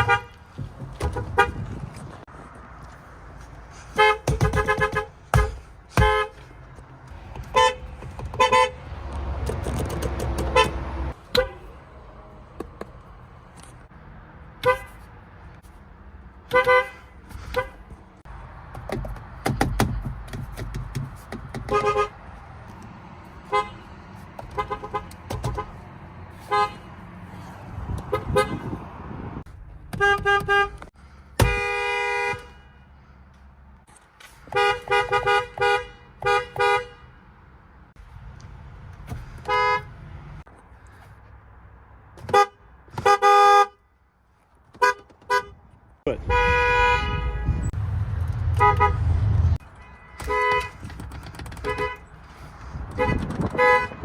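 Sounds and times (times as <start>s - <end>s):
car horns honking: 0.0s - 1.8s, 3.9s - 6.6s, 7.4s - 9.0s, 10.3s - 11.8s, 14.6s - 15.1s, 16.4s - 17.9s, 21.6s - 22.2s, 23.4s - 27.0s, 27.9s - 28.9s, 29.9s - 32.9s, 34.5s - 37.3s, 39.4s - 40.0s, 42.2s - 43.8s, 44.7s - 47.8s, 48.4s - 54.0s
traffic rumbling: 0.0s - 54.0s.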